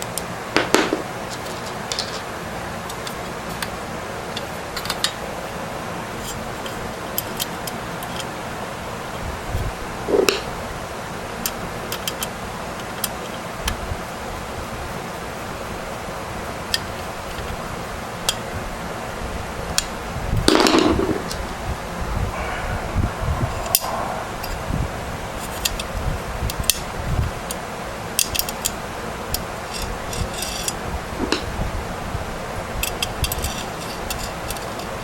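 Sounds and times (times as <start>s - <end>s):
scrape: 22.3s - 25.9s.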